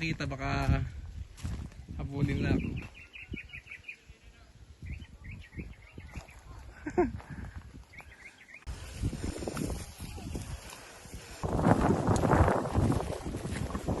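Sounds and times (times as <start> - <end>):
small birds chirping: 2.0 - 8.8.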